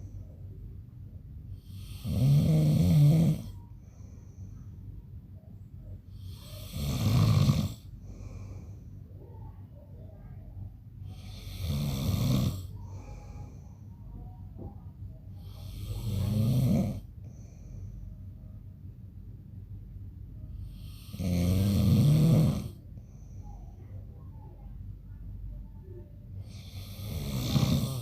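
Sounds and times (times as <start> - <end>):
quiet breathing: 0.0 - 28.0
man snoring: 1.6 - 3.6, 6.2 - 8.3, 11.1 - 13.1, 15.4 - 17.1, 20.6 - 22.8, 26.5 - 28.0.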